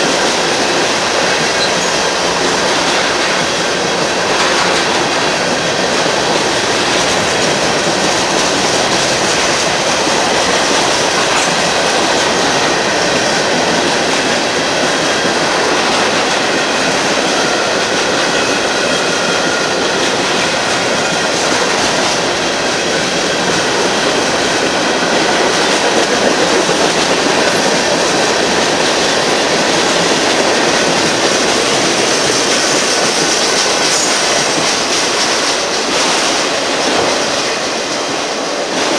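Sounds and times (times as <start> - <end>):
train wheels rumbling on rails: 0.0 - 38.9
high wheel squeal: 1.4 - 2.4.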